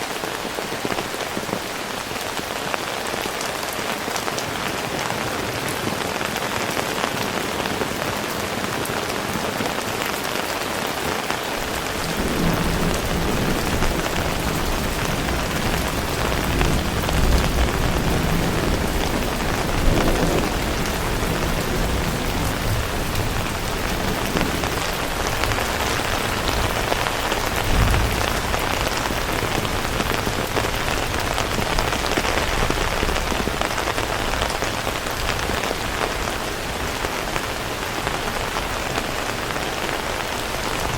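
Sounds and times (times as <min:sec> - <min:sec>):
heavy rain: 0:00.0 - 0:40.9
thunder rumbling: 0:11.6 - 0:39.0.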